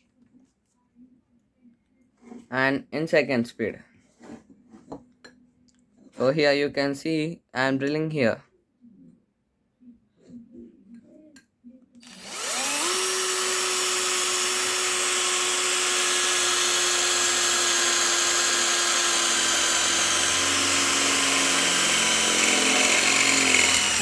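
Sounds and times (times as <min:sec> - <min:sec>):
cordless drill motor whine: 0:12.0 - 0:24.0
drill bit cutting metal: 0:12.0 - 0:24.0.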